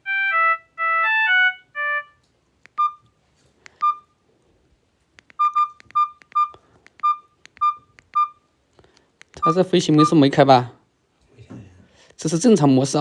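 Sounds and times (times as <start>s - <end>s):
phone electronic melody: 0.0s - 2.2s, 2.8s - 3.1s, 5.4s - 8.4s
phone keypad beeps: 2.8s - 3.0s, 3.8s - 4.1s, 5.3s - 8.4s.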